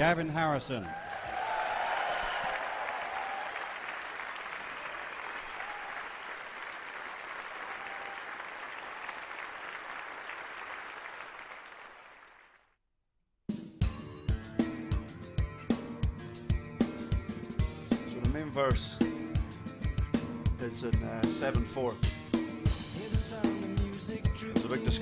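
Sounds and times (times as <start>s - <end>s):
audience applauding: 0.8s - 12.7s
drum kit hits: 15.7s - 25.0s.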